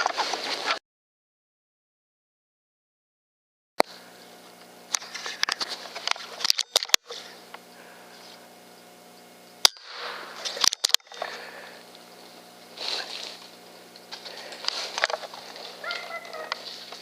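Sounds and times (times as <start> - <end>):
low electronic hum: 3.8 - 17.0
sharp clicks: 4.6 - 7.6, 9.6 - 11.3
loud crack: 9.6 - 11.2
rustling handling noise: 11.9 - 17.0.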